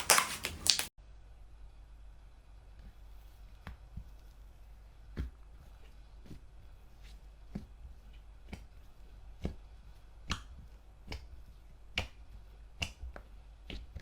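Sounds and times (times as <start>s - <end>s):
slime popping clicks: 0.0s - 0.9s.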